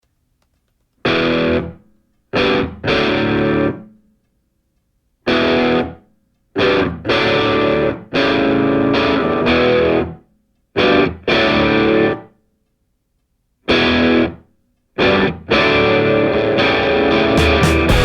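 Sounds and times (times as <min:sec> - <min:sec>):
distorted electric guitar stabs: 0:15.0 - 0:18.0.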